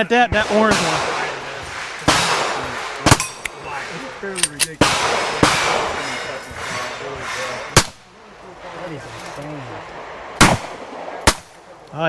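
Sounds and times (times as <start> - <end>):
revolver gunshots: 0.3 - 8.1, 10.0 - 11.8.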